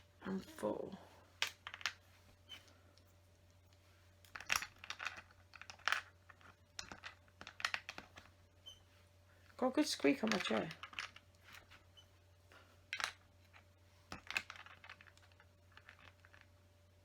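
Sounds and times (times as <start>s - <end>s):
plastic bricks clicking together: 4.2s - 8.3s, 14.1s - 16.5s.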